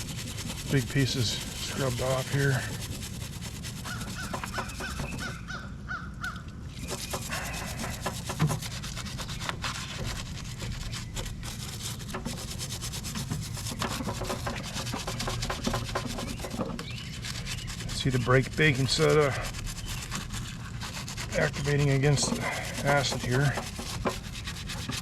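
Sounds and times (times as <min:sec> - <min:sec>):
brush scrubbing metal: 0:00.0 - 0:05.5, 0:06.7 - 0:25.0
bird calling: 0:03.8 - 0:08.1.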